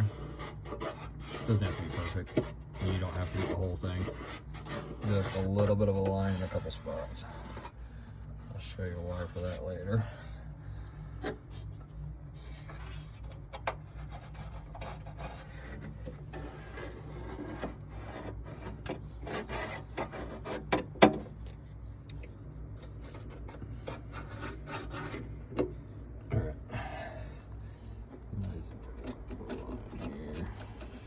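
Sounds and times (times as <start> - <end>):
marker scraping on sheet metal: 0.0 - 7.8, 12.4 - 21.4, 22.1 - 26.1, 28.7 - 31.0
steady low hum: 0.0 - 31.0.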